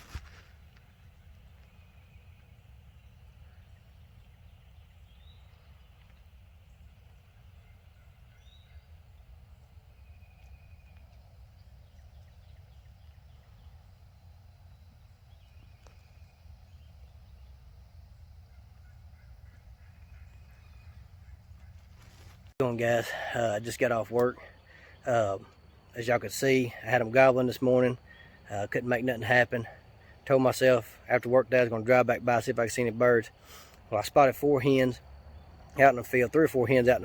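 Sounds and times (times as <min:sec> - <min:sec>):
distant turkeys gobbling: 0:18.0 - 0:22.4.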